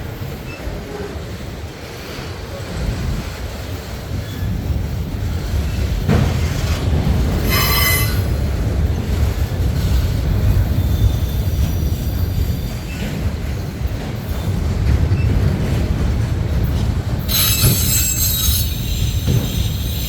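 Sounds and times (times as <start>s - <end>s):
freight train rumbling past: 0.0s - 20.0s
train wheel squeal: 5.6s - 8.5s, 10.5s - 13.3s, 17.2s - 20.0s.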